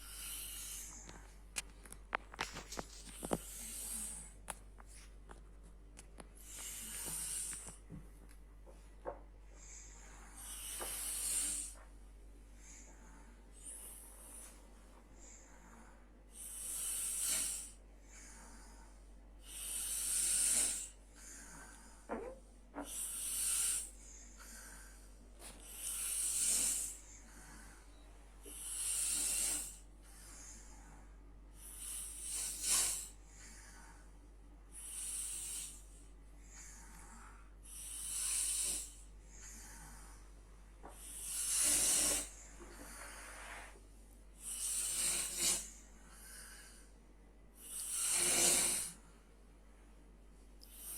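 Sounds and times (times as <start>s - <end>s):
person snoring: 15.4s - 25.0s, 25.6s - 31.0s, 36.5s - 40.2s, 41.0s - 43.7s, 44.4s - 46.8s, 47.6s - 49.1s.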